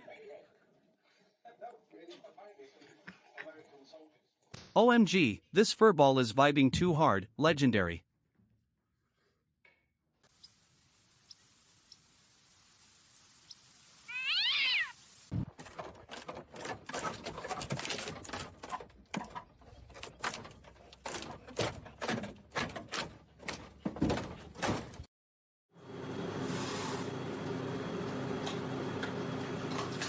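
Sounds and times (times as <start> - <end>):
cat meowing: 14.1 - 15.0
irregular knocks and thumps: 15.4 - 25.1.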